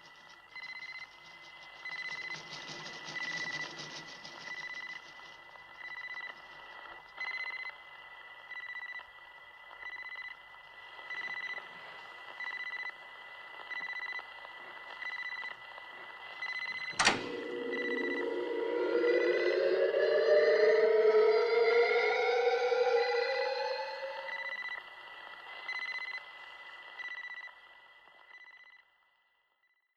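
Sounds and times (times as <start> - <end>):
high electronic beep pulsing: 16.5 - 24.8
low rising tone: 17.0 - 24.8.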